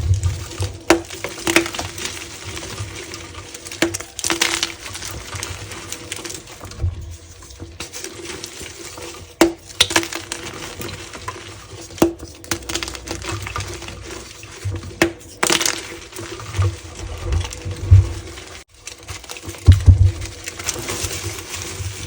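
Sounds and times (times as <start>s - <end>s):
handling clicks and crinkles: 0.0s - 22.0s.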